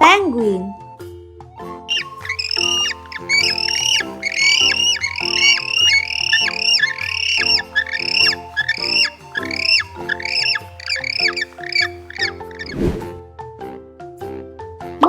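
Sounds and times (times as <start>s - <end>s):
penguin squawking: 1.9s - 12.8s.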